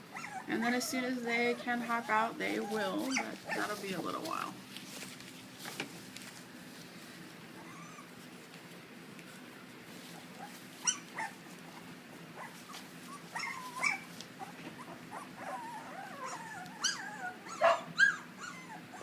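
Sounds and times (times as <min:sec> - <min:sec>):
dogs whining: 0:00.0 - 0:00.6, 0:01.4 - 0:03.8, 0:07.5 - 0:08.3, 0:09.4 - 0:19.0
dogs yelping: 0:00.0 - 0:00.6, 0:01.4 - 0:03.8, 0:07.5 - 0:08.2, 0:10.2 - 0:19.0.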